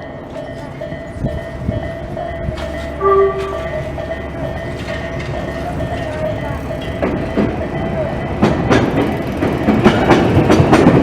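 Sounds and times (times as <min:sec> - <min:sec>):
crossing warning bell ringing: 0:00.0 - 0:11.0
electric train rumbling past: 0:00.0 - 0:11.0
train horn blast: 0:02.7 - 0:03.9.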